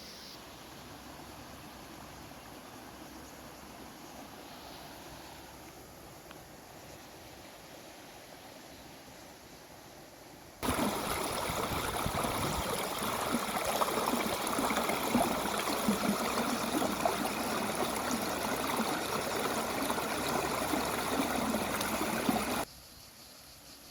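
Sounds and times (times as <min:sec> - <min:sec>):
bubbling rushing noise: 0:10.6 - 0:22.7.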